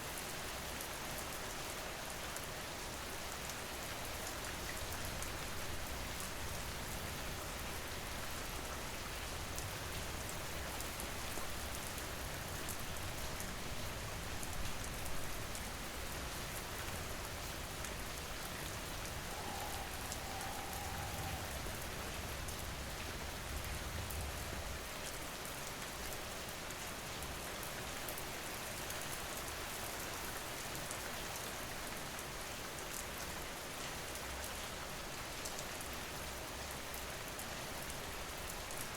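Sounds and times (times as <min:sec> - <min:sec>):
steady rain patter: 0:00.0 - 0:38.9
low rumble: 0:18.9 - 0:22.6.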